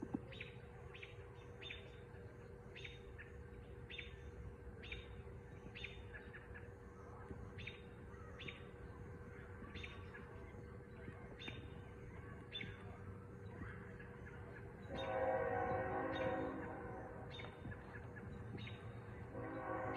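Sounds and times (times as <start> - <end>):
low outdoor rumble: 0.0 - 19.9
bird chirping: 0.2 - 19.9.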